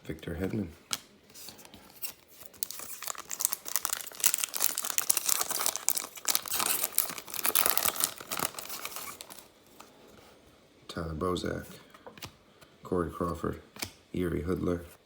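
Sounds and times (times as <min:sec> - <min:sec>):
wrapper being torn and crinkled: 0:02.0 - 0:09.5.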